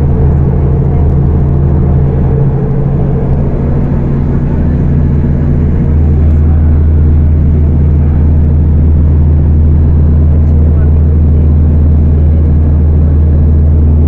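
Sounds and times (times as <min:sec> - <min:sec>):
bus diesel engine droning: 0:00.0 - 0:14.0.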